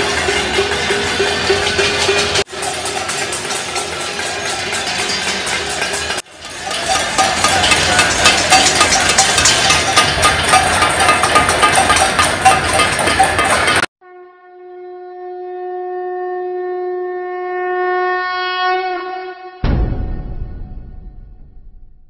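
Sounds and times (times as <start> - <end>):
bells clanging: 0.0 - 13.9
metal banging: 0.0 - 13.9.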